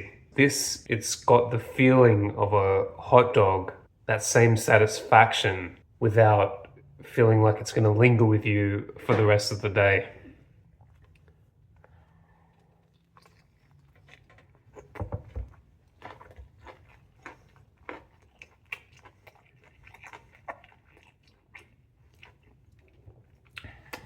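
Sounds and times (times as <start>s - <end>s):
wet chewing smacks: 10.6s - 24.0s.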